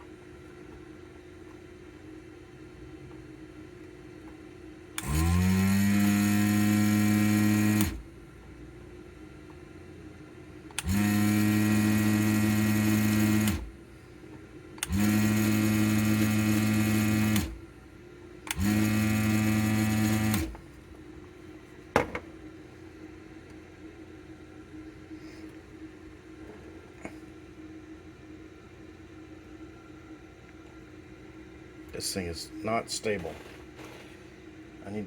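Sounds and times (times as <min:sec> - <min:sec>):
electric vacuum pump buzzing: 0:05.0 - 0:08.2, 0:10.7 - 0:13.9, 0:14.8 - 0:17.7, 0:18.4 - 0:20.9.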